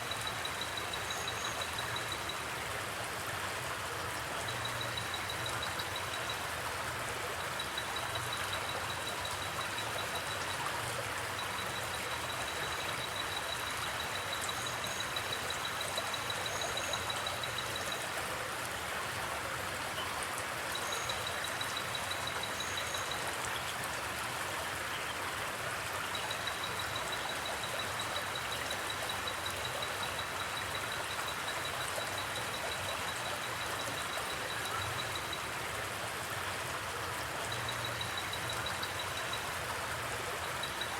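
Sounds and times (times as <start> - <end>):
river flowing: 0.0 - 40.9
cricket trilling: 11.4 - 18.0.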